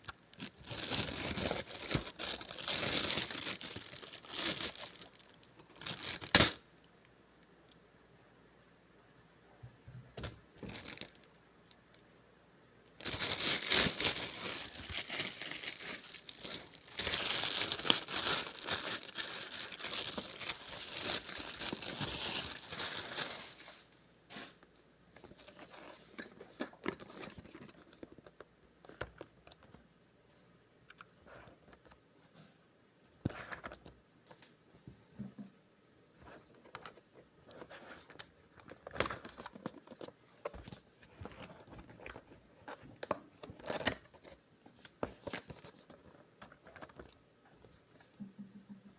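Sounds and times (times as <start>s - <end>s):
packaging tearing and crinkling: 0.4s - 6.6s, 13.0s - 23.8s.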